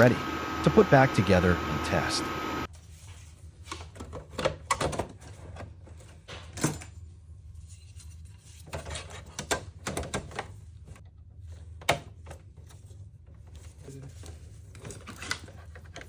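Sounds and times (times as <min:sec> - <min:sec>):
steady low hum: 0:00.0 - 0:02.7.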